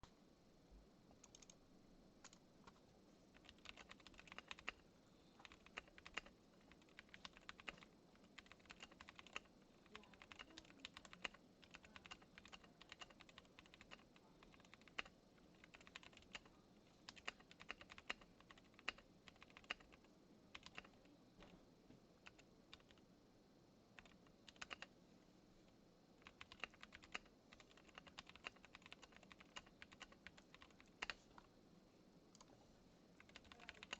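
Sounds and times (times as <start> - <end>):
mechanical keyboard typing: 1.2 - 1.6, 3.3 - 4.8, 5.4 - 16.5, 17.1 - 21.1, 22.2 - 23.0, 24.0 - 24.9, 26.2 - 31.5, 33.2 - 33.9.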